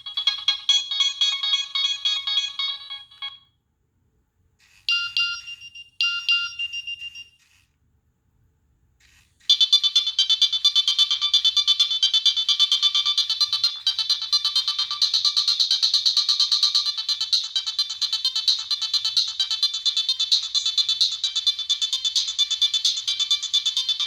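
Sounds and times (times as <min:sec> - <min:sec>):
mobile phone ringtones: 0:00.0 - 0:03.5, 0:04.9 - 0:07.6, 0:09.5 - 0:17.8.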